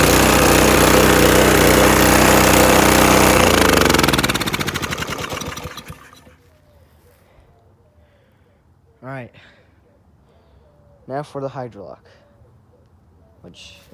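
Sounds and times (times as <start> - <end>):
small engine running and winding down: 0.0 - 6.4.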